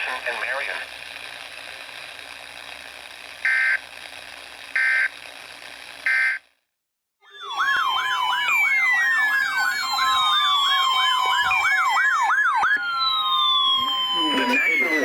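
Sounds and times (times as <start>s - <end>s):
electronic siren yelping: 3.4s - 3.8s, 4.8s - 5.1s, 6.0s - 6.4s, 7.2s - 15.0s
siren tone sliding downward: 7.2s - 15.0s.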